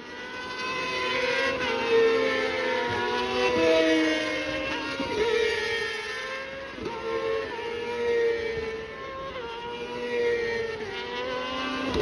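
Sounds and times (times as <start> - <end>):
racing motorcycle engines revving: 0.0 - 12.0.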